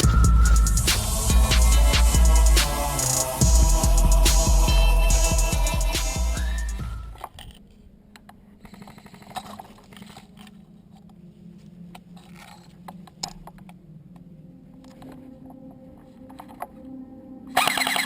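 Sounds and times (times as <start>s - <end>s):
steady low hum: 0.0s - 7.2s.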